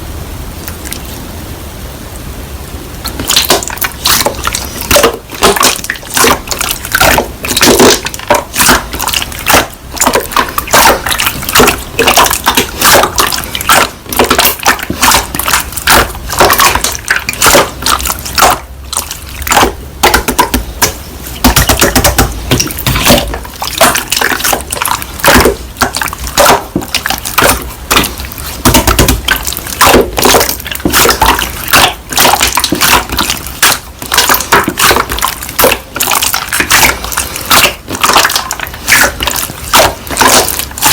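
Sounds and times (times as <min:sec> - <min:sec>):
slime squishing with wet pops: 0:00.6 - 0:01.2, 0:03.0 - 0:40.9.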